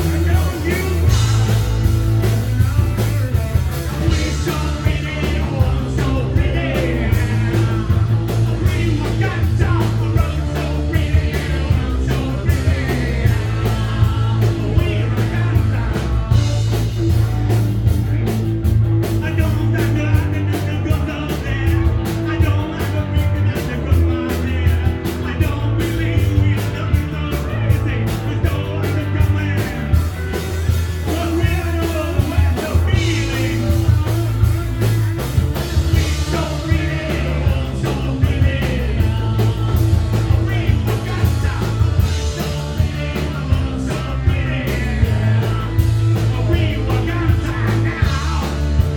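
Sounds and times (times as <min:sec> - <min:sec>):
person singing: 0:00.0 - 0:01.8, 0:03.9 - 0:17.4, 0:31.0 - 0:48.9
punk rock band playing live: 0:00.0 - 0:48.9.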